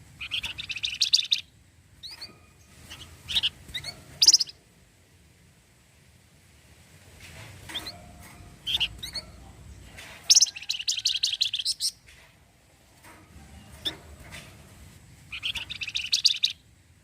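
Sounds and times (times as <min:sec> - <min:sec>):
bird chattering trill: 0:00.2 - 0:02.2, 0:02.9 - 0:04.6, 0:08.6 - 0:09.4, 0:10.3 - 0:12.0, 0:15.3 - 0:16.6
bird chirping: 0:00.2 - 0:04.6, 0:07.7 - 0:12.1, 0:15.2 - 0:16.7.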